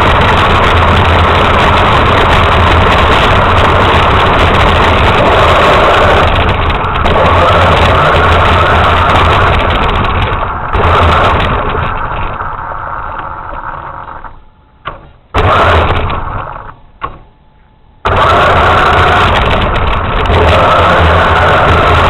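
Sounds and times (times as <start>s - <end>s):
toy truck motor running: 0.0s - 12.5s, 15.4s - 16.5s, 18.1s - 22.0s.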